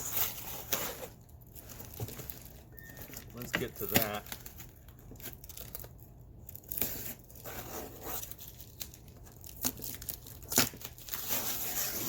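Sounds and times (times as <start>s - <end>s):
packing tape tearing: 0.0s - 12.0s.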